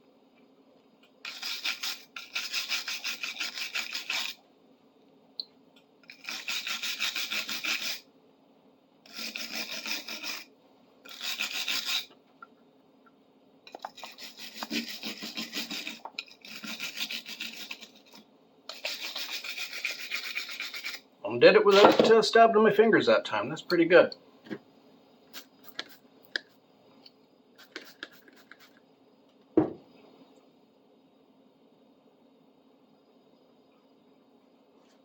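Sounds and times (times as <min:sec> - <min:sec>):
brush scrubbing metal: 0:01.3 - 0:04.4, 0:06.1 - 0:08.0, 0:09.1 - 0:10.5, 0:11.1 - 0:12.1, 0:13.7 - 0:21.0.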